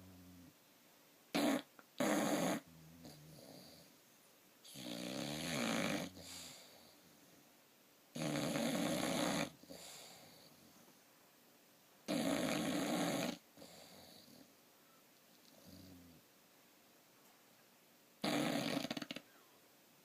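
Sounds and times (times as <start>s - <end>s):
rasping snore: 1.4s - 3.9s, 4.7s - 6.9s, 8.2s - 10.4s, 12.1s - 14.5s, 18.2s - 19.3s
quiet breathing: 6.0s - 7.6s, 9.5s - 11.1s, 13.4s - 16.3s.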